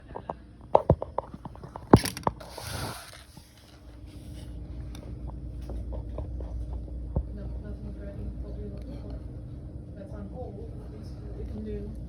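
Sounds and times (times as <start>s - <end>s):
low room hum: 0.0s - 12.0s
rustling scrape: 1.7s - 4.6s.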